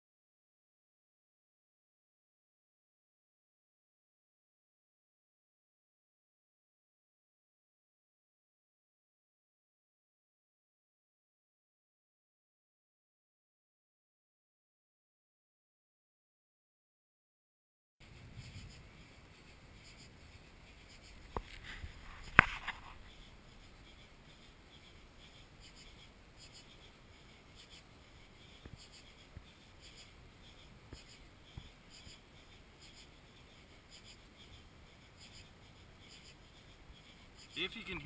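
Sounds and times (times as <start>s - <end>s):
night insects chirping: 18.0s - 38.0s.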